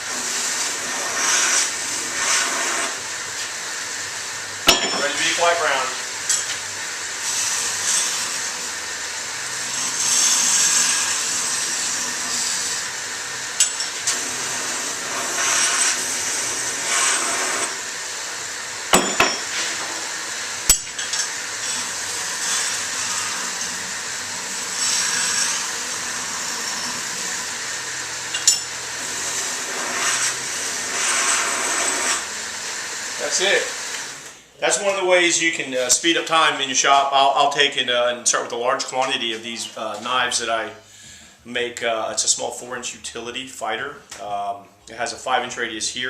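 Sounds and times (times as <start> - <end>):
steel grinding on belt: 0.0 - 3.5, 4.6 - 6.6, 7.2 - 18.1, 18.9 - 34.3
belt grinder humming: 0.0 - 34.4.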